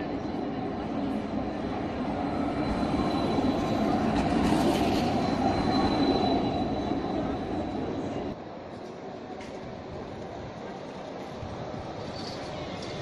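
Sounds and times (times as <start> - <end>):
tram wheels rumbling on track: 0.0 - 13.0
high steady squeal: 2.1 - 8.2.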